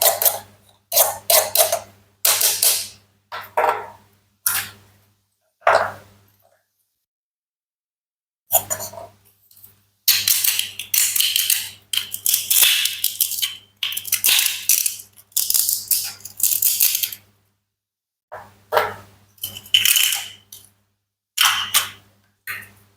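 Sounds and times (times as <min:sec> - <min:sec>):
toy food being sliced: 0:10.1 - 0:17.2.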